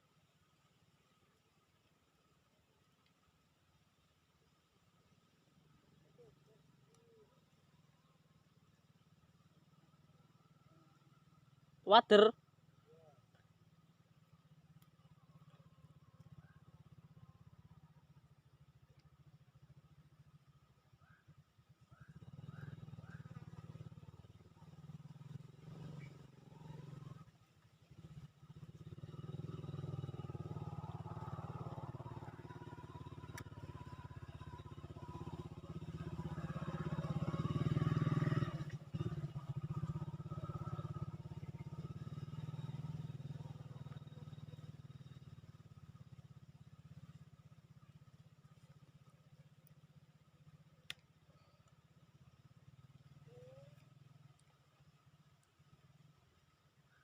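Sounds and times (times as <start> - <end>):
vehicle engine passing by: 21.9 - 49.1.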